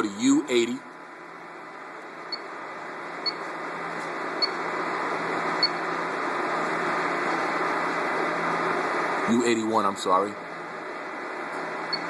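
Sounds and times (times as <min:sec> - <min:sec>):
steady hum: 0:00.0 - 0:12.0.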